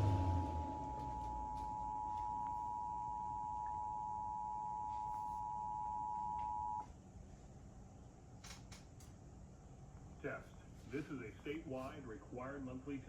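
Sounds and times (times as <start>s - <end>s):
two-tone alert signal: 0.1s - 6.8s.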